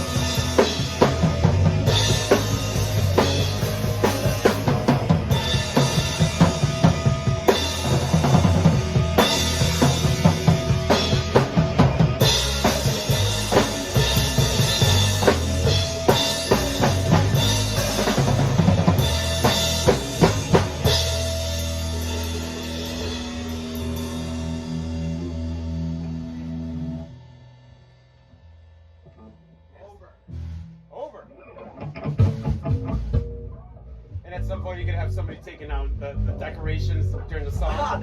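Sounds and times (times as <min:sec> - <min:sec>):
drum kit kick and snare: 0:00.0 - 0:24.4
band playing a song: 0:00.0 - 0:26.6, 0:31.6 - 0:33.6.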